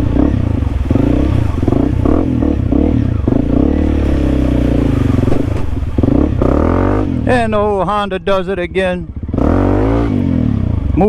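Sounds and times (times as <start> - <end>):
motorcycle engine revving: 0.0 - 11.0
motorcycle rattling: 0.0 - 11.0.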